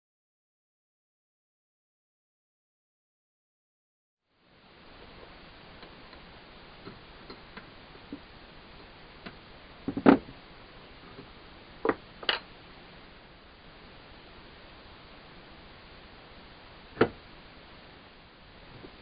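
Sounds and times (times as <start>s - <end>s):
faint hiss: 4.2s - 19.0s.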